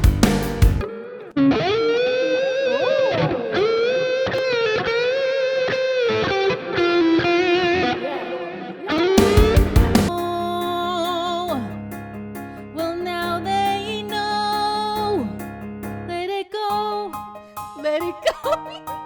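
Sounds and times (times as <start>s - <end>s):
band music with drums: 0.0s - 0.8s, 9.2s - 10.2s
distorted electric guitar lead: 0.0s - 11.8s.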